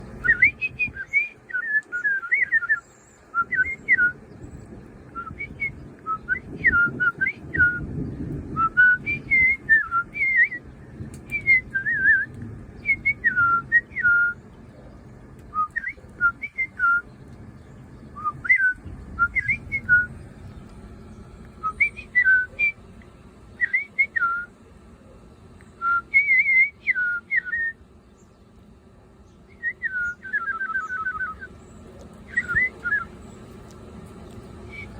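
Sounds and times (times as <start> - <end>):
person whistling birdsong: 0.2 - 4.3, 5.1 - 14.4, 15.5 - 17.1, 18.1 - 20.2, 21.6 - 22.8, 23.6 - 24.5, 25.7 - 27.8, 29.5 - 31.5, 32.3 - 33.2, 34.6 - 34.9.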